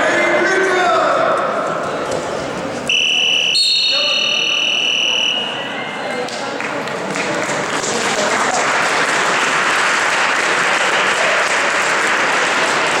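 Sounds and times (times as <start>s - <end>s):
crowd applauding: 6.5s - 13.0s.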